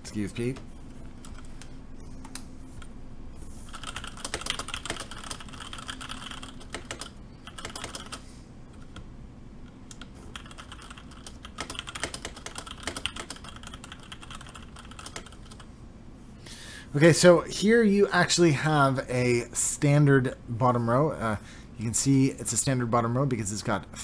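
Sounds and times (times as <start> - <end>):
mechanical keyboard typing: 3.7 - 8.2, 9.9 - 15.7.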